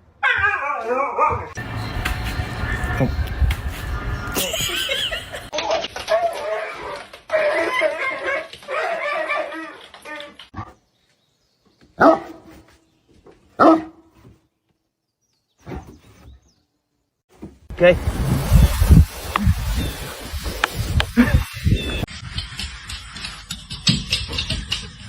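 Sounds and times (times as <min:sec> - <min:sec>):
dog barking: 0:00.2 - 0:01.6, 0:12.0 - 0:12.5, 0:13.6 - 0:14.1
dog whining and howling: 0:00.2 - 0:01.6.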